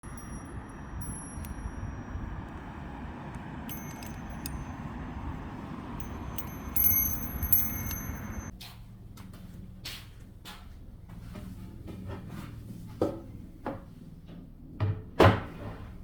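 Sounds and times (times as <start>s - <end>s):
steady wind noise: 0.0s - 8.5s
wind chime tinkling: 0.0s - 8.5s.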